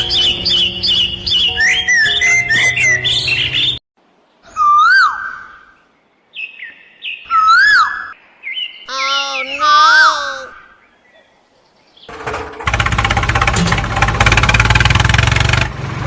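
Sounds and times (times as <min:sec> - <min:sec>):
fuller-toned bird call: 0:00.0 - 0:03.8, 0:04.4 - 0:12.2.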